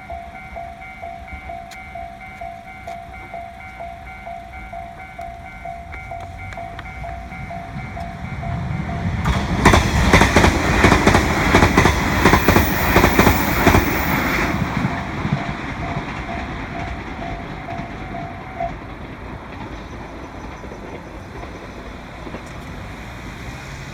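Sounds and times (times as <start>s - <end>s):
level-crossing warning bell ringing: 0.0s - 20.6s
train wheels clacking over rail joints: 4.9s - 23.9s.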